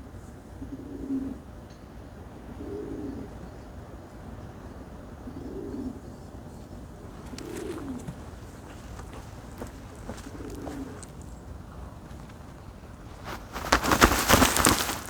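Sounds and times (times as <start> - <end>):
turkey cooing: 6.8 - 12.9.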